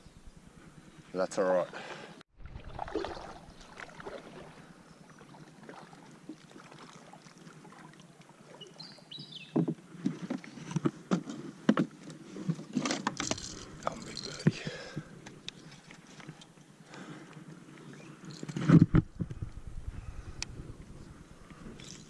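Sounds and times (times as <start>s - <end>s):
light water sounds: 2.4s - 10.8s.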